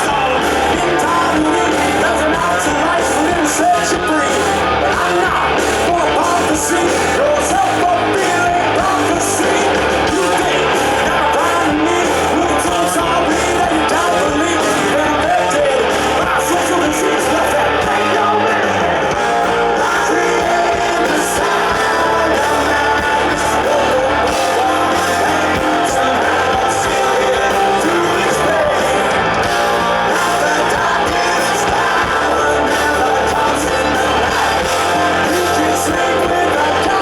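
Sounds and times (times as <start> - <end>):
hard rock band playing: 0.0 - 37.0
person singing: 0.0 - 37.0.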